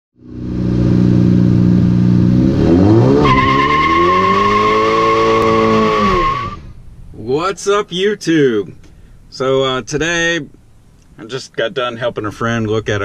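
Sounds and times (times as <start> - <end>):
tire squealing: 0.2 - 7.0
car engine revving: 0.2 - 7.2.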